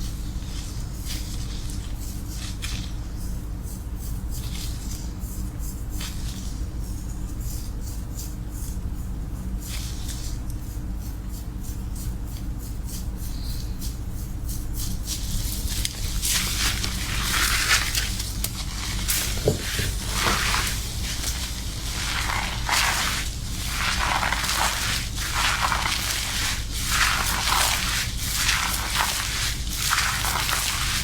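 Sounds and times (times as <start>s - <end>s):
fingers scrubbing lathered scalp: 13.8s - 31.0s.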